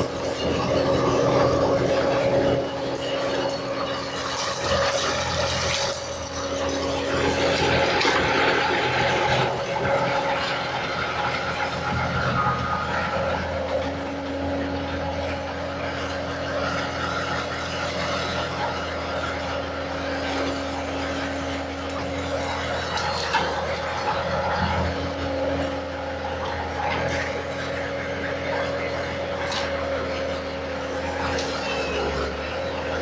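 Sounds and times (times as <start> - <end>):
skid steer engine running: 0.0 - 33.0.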